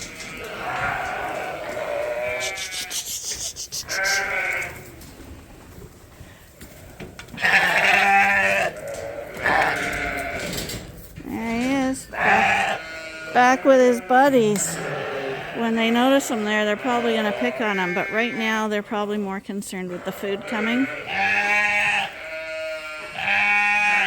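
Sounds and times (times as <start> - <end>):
sheep bleating: 0.0 - 3.1, 3.8 - 4.8, 7.4 - 10.4, 12.1 - 18.6, 19.9 - 24.0.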